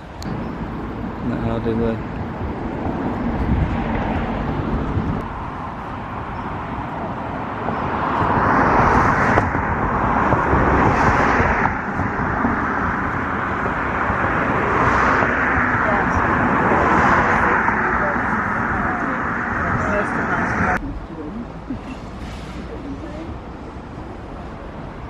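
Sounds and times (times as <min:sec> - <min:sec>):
rushing swell: 0:00.0 - 0:20.8.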